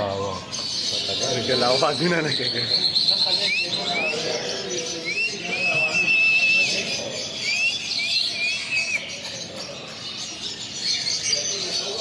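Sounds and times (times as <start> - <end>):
small birds chirping: 0.0 - 12.0
parrot whistling: 5.0 - 9.2.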